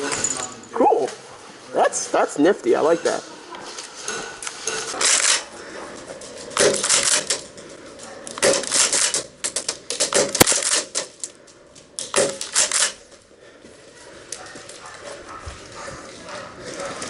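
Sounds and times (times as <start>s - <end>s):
sharp crack: 6.5s - 7.5s, 8.3s - 11.3s, 12.0s - 13.0s.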